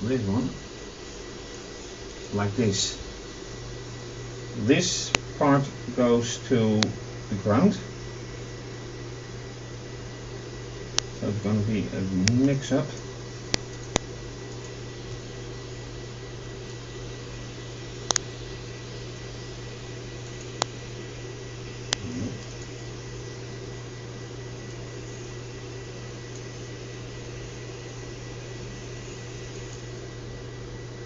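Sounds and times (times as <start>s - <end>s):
steady hum: 0.0s - 31.0s
computer mouse clicks: 12.2s - 14.8s
low murmur: 22.0s - 22.6s.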